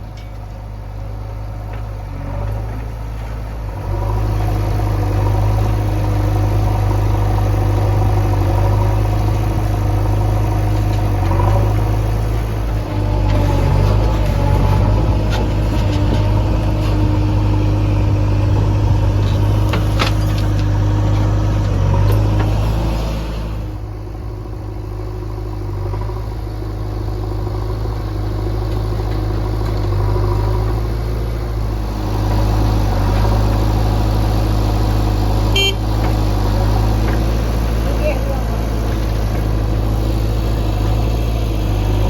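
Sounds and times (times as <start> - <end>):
heavy diesel engines running: 0.0 - 42.0
short high beep: 35.6 - 35.8.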